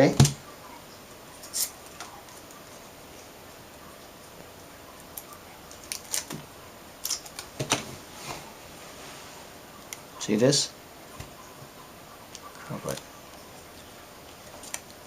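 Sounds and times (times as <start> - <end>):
aluminium foil crinkling: 5.0 - 7.7, 13.6 - 15.0.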